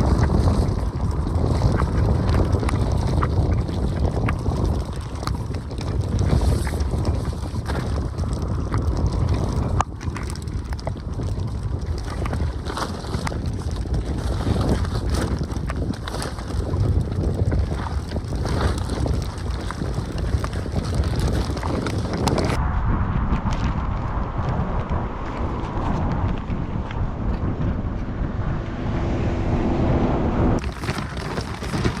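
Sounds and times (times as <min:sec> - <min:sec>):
raindrops ticking close by: 0:00.0 - 0:22.6
wind buffeting microphone: 0:00.0 - 0:32.0.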